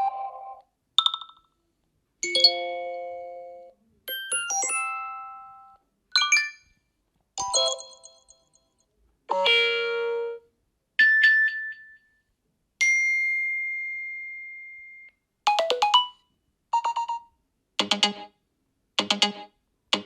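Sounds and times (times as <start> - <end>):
phone ringtones and alert tones: 0.0 - 1.6, 2.2 - 6.8, 7.4 - 8.5, 15.5 - 18.4, 19.0 - 20.0.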